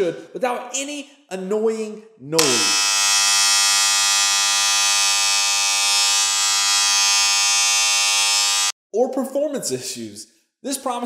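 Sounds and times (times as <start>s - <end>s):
electric hair trimmer buzzing: 2.4s - 8.8s.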